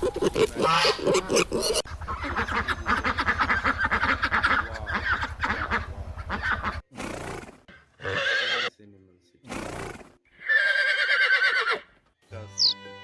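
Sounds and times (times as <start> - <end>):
farm fowl calling: 0.0 - 6.8, 7.7 - 8.7, 10.4 - 13.0.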